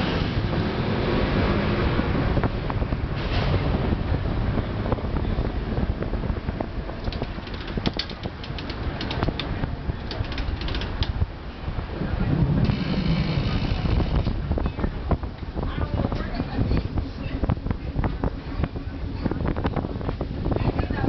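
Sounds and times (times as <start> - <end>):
streetcar rumbling on rails: 0.0 - 21.0
high wheel squeaks and clicks: 7.0 - 11.2.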